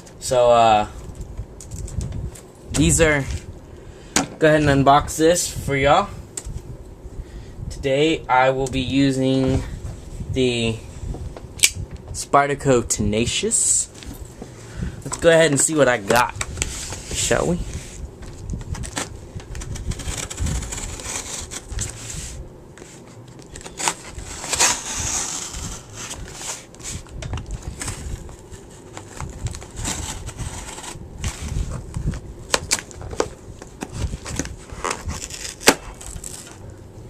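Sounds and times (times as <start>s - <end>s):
packaging crinkling and tearing: 18.2s - 22.0s, 23.2s - 36.7s.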